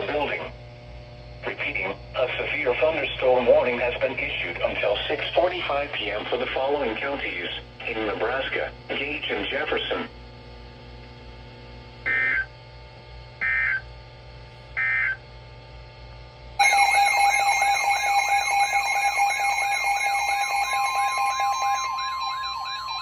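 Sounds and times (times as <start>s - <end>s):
warbling alert siren: 12.0s - 12.5s, 13.4s - 13.9s, 14.8s - 15.2s, 16.6s - 23.0s
digital data tone bursts: 12.1s - 12.5s, 13.4s - 13.8s, 14.8s - 15.2s, 16.6s - 23.0s.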